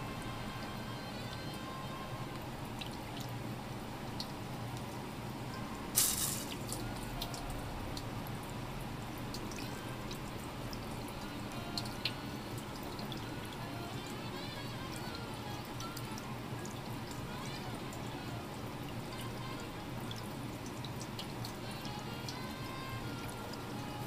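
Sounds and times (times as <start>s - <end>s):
wet clicks and drips: 4.2s - 5.0s, 11.8s - 13.6s
burst of water: 5.9s - 6.9s.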